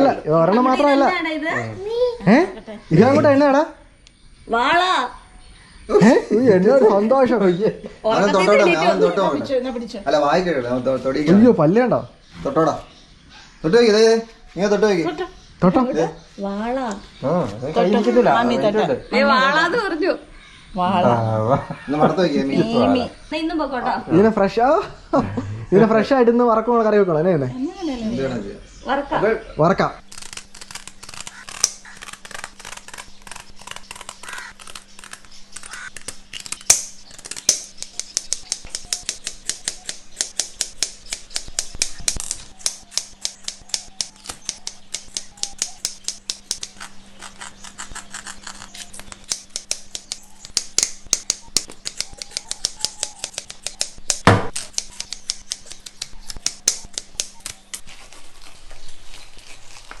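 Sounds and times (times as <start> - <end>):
knife scraping fish scales: 42.2 - 50.6, 51.8 - 60.0
sharp knock: 54.1 - 54.9.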